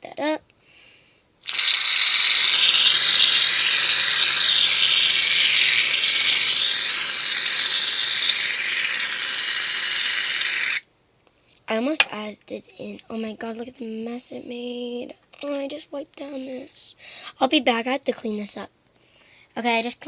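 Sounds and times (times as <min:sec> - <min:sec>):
aerosol can spraying foam: 0:01.4 - 0:10.8.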